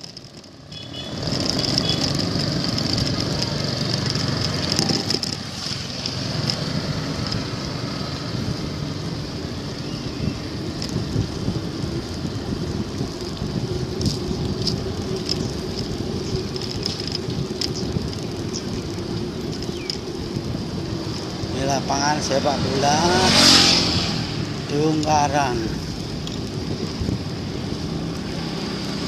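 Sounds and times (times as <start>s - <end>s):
sharp ticks: 0.0s - 7.5s, 14.0s - 20.4s
tyre rumble on road: 0.0s - 29.0s
wind on microphone: 1.0s - 29.0s.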